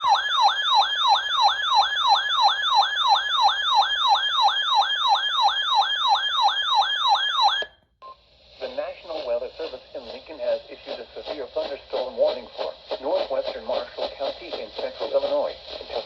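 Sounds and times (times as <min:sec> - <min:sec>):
electronic siren yelping: 0:00.0 - 0:07.8.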